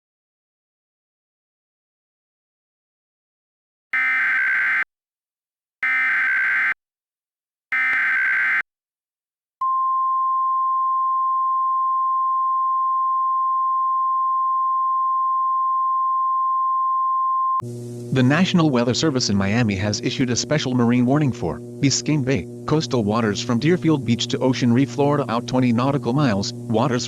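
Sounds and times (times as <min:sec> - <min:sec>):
screechy digital data tones: 0:04.0 - 0:04.9, 0:05.8 - 0:06.8, 0:07.7 - 0:08.6
steady warning alarm tone: 0:04.0 - 0:04.9, 0:05.8 - 0:06.8, 0:07.7 - 0:08.6.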